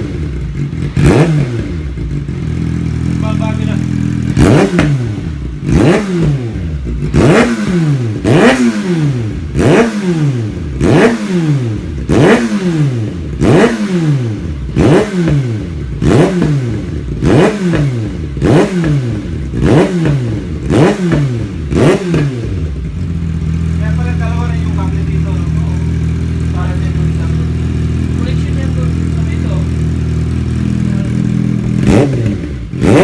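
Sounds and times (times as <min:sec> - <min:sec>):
motorcycle engine revving: 0:00.0 - 0:33.0.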